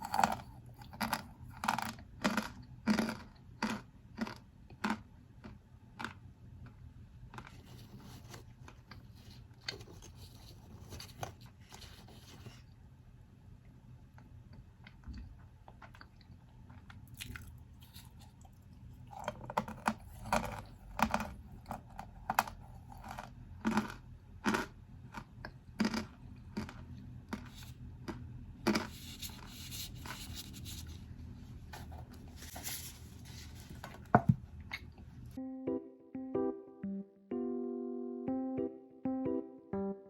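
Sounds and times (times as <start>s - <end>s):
cornstarch crunching by hand: 0.0s - 5.0s, 19.1s - 25.2s, 25.8s - 30.9s.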